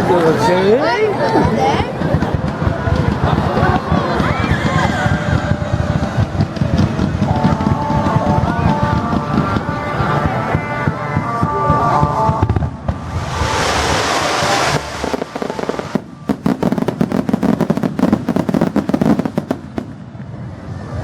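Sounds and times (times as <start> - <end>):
crackling firework pops: 2.0 - 9.9, 12.4 - 20.3
music: 7.2 - 12.9.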